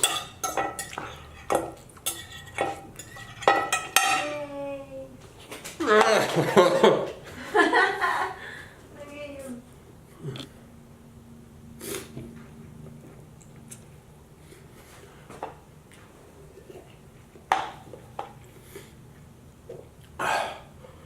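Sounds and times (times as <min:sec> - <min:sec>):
cutlery clicking on plate: 0:00.0 - 0:04.3
person chewing and breathing: 0:10.1 - 0:10.6, 0:12.9 - 0:17.3, 0:18.3 - 0:21.0.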